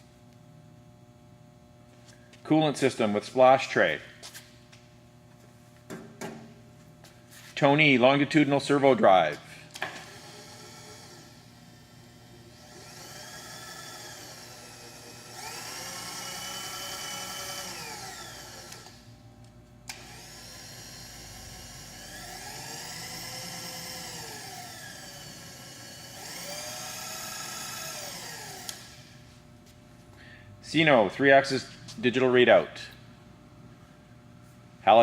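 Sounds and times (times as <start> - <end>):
power-feed motor whining: 9.7 - 19.1, 19.9 - 29.3.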